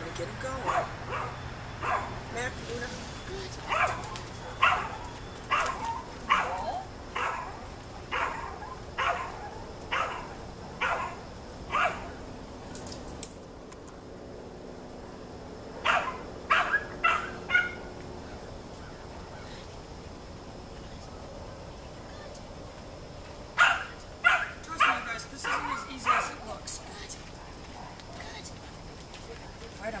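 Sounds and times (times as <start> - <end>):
dog barking: 0.6 - 2.2, 3.6 - 12.2, 15.8 - 17.9, 23.6 - 26.5.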